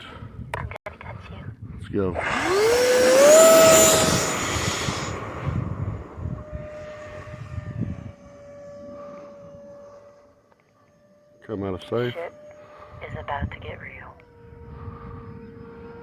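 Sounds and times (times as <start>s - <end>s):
electric jet motors whining: 2.1s - 13.1s, 14.2s - 16.0s.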